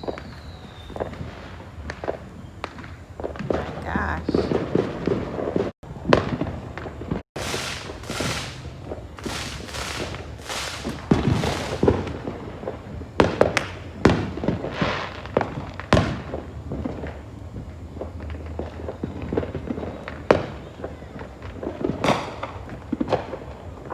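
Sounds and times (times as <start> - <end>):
fireworks bangs and crackling: 0.0 - 23.9
sharp loud firework reports: 2.8 - 12.8.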